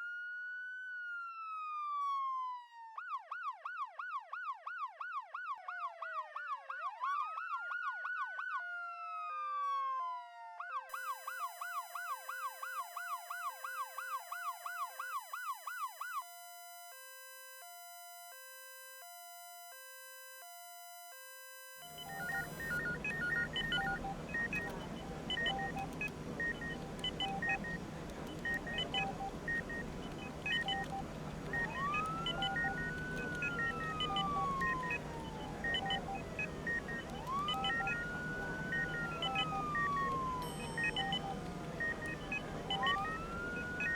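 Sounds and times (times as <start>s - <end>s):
electronic emergency sirens: 1.0s - 43.9s
medical equipment beeps: 10.9s - 43.9s.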